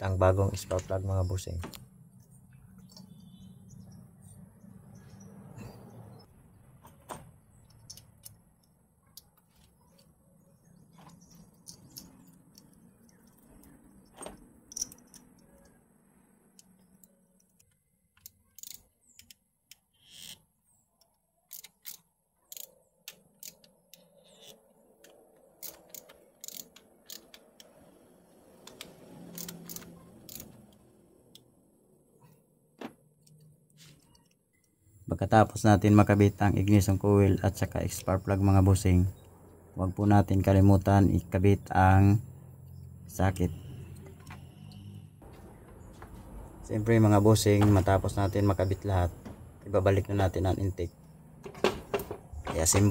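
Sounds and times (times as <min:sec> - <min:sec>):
hand tools clicking and clinking: 0:11.1 - 0:15.8.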